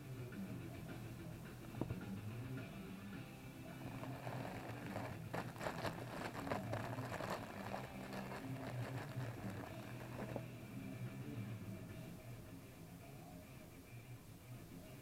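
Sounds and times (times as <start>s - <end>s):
steady low hum: 0.0s - 15.0s
handling clicks and rustles: 3.8s - 10.4s.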